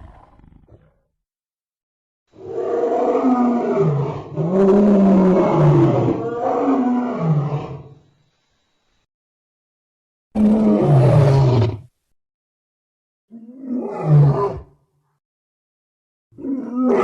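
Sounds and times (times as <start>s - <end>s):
big cat roars: 0.0s - 1.1s, 2.4s - 7.9s, 10.4s - 11.8s, 13.3s - 14.7s, 16.4s - 17.0s.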